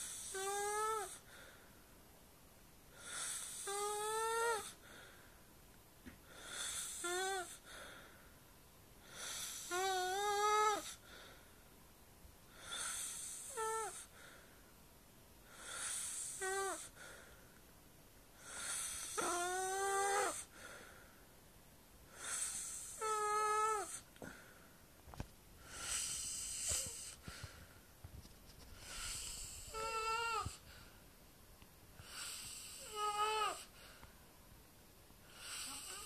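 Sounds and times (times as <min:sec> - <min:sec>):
person snoring with squeaky whistle: 0:00.0 - 0:01.2, 0:03.1 - 0:04.7, 0:12.7 - 0:14.0, 0:15.8 - 0:16.9, 0:18.5 - 0:20.4, 0:28.9 - 0:30.5, 0:32.1 - 0:33.6, 0:35.4 - 0:36.0.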